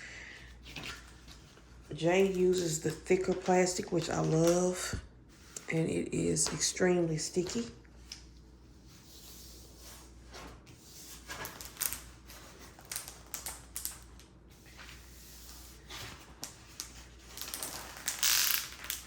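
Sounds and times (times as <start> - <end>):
plastic film crinkling: 11.2 - 14.3, 15.7 - 19.0.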